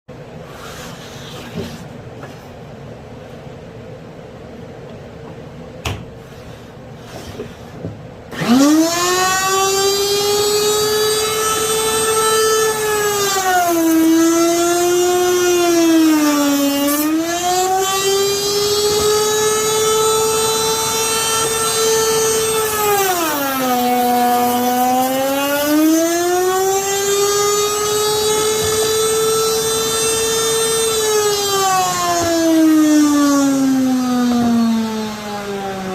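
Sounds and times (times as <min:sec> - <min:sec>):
router bit cutting wood: 0:08.3 - 0:35.9
router motor whining: 0:08.3 - 0:35.9.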